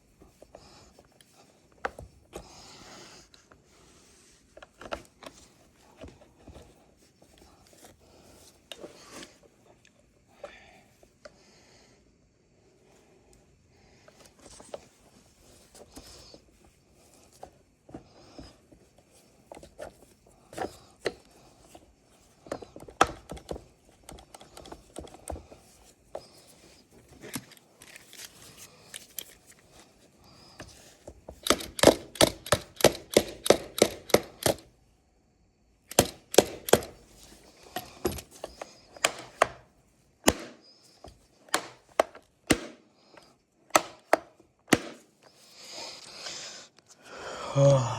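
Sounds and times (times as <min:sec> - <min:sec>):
knocks on chainsaw parts: 0:40.3 - 0:40.6, 0:41.5 - 0:42.8, 0:43.7 - 0:45.1.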